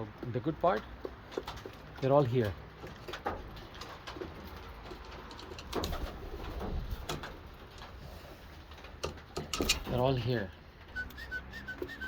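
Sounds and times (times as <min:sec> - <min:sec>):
pigeons clicking and scuffling: 0:00.0 - 0:12.0
pigeons cooing: 0:10.9 - 0:12.0.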